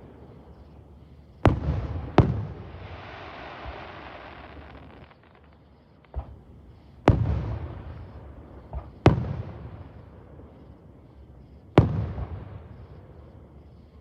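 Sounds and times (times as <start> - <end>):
fireworks bangs with echo: 1.4 - 5.0, 7.0 - 10.6, 11.7 - 13.0
small firework pop: 4.6 - 6.4, 8.7 - 9.3.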